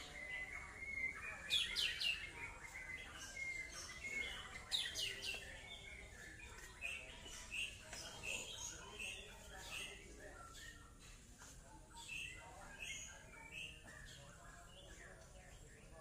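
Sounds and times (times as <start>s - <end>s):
bird whistling song: 0.0s - 11.0s.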